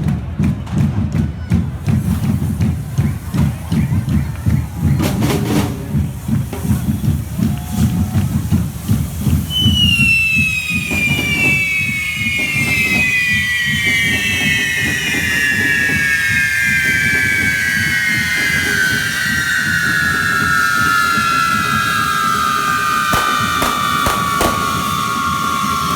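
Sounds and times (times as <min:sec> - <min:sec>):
drums pounding rapidly: 0:00.0 - 0:09.8, 0:23.1 - 0:25.6
firework whistle gliding down: 0:02.1 - 0:25.9.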